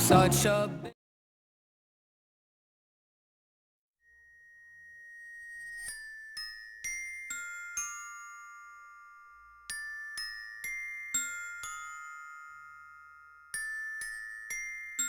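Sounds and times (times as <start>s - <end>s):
glockenspiel-like bell melody: 4.0s - 15.0s.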